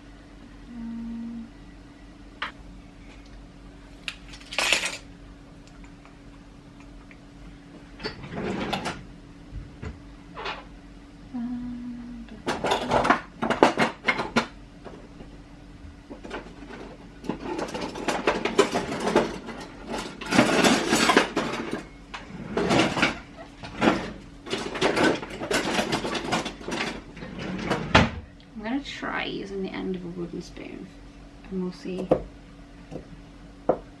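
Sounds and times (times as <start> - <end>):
cutlery and crockery clattering: 4.3 - 5.0, 12.5 - 14.4, 16.2 - 21.8, 22.6 - 27.0.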